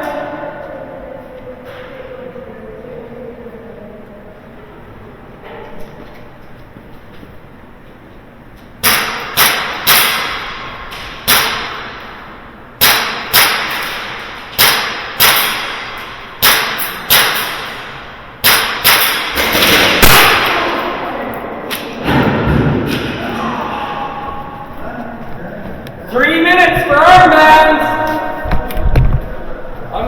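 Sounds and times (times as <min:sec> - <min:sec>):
airsoft gun shots echoing: 0:08.8 - 0:12.1, 0:12.8 - 0:21.1.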